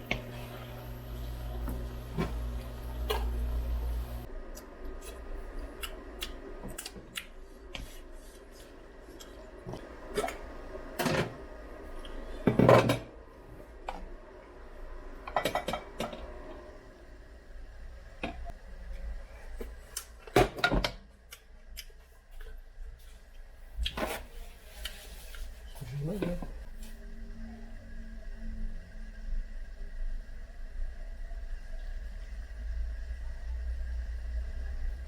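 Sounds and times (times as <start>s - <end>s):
steady low hum: 0.0s - 20.0s
dishes clattering: 15.3s - 16.2s.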